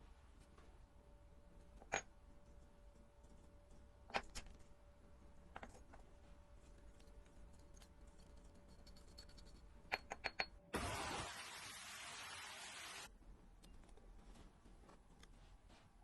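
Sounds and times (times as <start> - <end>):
low steady hum: 0.0 - 10.7
small tools clicking and tapping: 1.6 - 4.8, 5.4 - 10.6.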